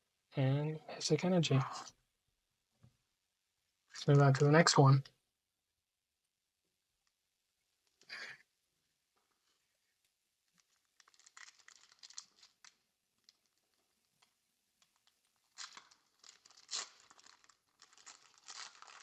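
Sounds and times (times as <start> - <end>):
foil wrapper crinkling and tearing: 10.6 - 13.6, 15.0 - 19.0.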